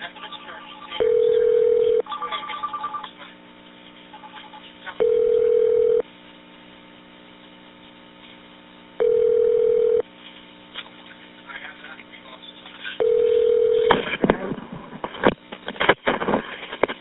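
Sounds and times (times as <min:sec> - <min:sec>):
steady low telephone tone: 0:00.8 - 0:03.0, 0:05.0 - 0:06.1, 0:09.0 - 0:10.1, 0:13.0 - 0:13.9.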